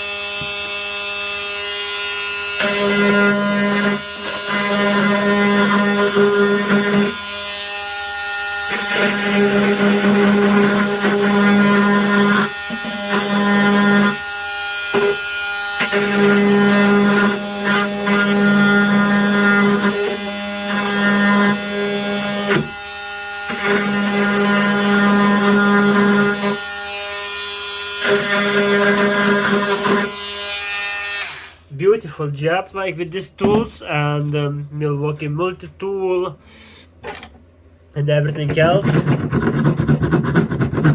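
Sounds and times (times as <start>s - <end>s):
oscillating multi-tool buzzing on plastic: 0.0s - 30.5s.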